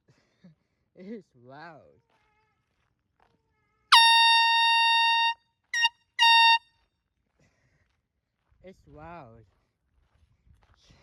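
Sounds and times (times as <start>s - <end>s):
air horn blasts: 3.9s - 6.6s.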